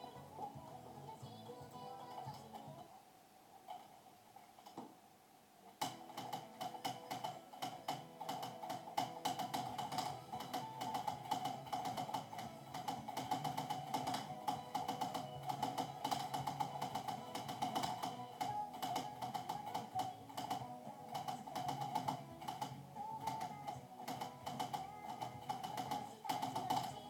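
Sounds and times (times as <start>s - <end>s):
mechanical keyboard typing clicks: 5.8s - 27.0s.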